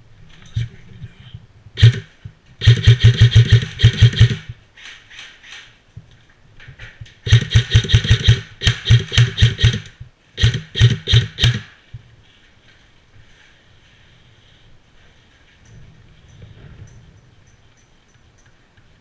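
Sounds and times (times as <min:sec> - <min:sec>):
airsoft gun firing bursts: 0:01.8 - 0:04.6, 0:07.2 - 0:11.8
fainter gunshots: 0:01.8 - 0:04.6, 0:07.2 - 0:11.8.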